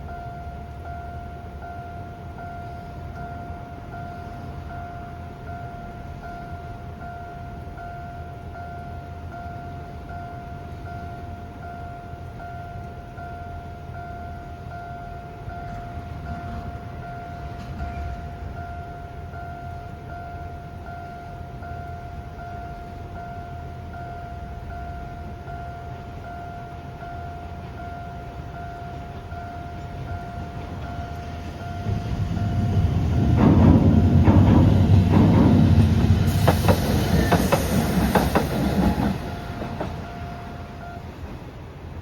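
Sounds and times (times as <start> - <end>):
level crossing warning bell: 0.0 - 41.7
train rumbling past: 0.0 - 42.0
wheels clacking over rail joints: 15.7 - 18.5, 27.5 - 41.7.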